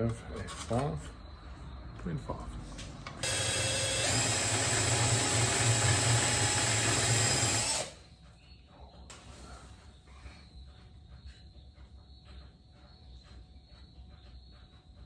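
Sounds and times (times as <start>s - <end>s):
electric drill whining: 3.2s - 8.0s.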